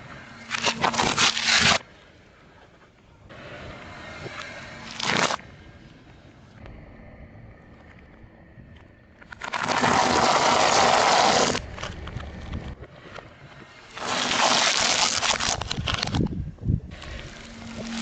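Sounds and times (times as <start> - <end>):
car tyre crushing objects: 0.4 - 1.9, 9.2 - 12.8, 13.8 - 18.0.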